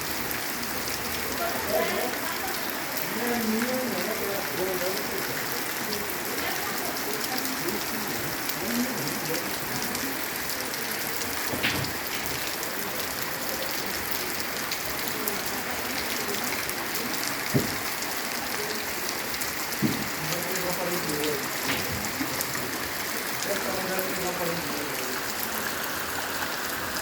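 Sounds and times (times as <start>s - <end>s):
steady rain falling: 0.0s - 27.0s
loud drips or knocks: 11.5s - 12.4s, 17.5s - 17.9s, 19.8s - 20.2s, 21.6s - 22.7s.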